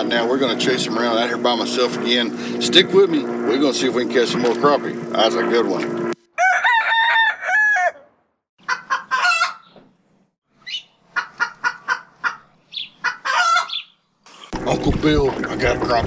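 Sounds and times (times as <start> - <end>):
rooster crowing: 6.3 - 9.6, 13.2 - 13.8
chicken clucking: 11.1 - 13.9.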